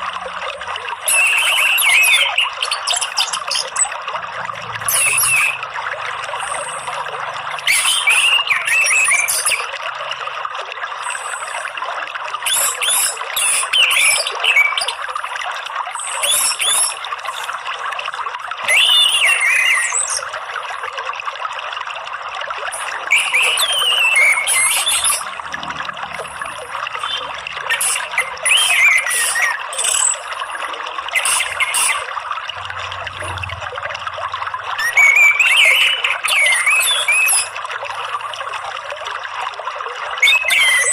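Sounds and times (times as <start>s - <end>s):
trickle of running water: 0.0s - 40.9s
thrush whistling song: 1.0s - 4.0s, 4.8s - 9.8s, 12.4s - 15.0s, 15.9s - 17.6s, 18.6s - 20.4s, 22.7s - 32.2s, 34.7s - 37.6s, 40.2s - 40.9s.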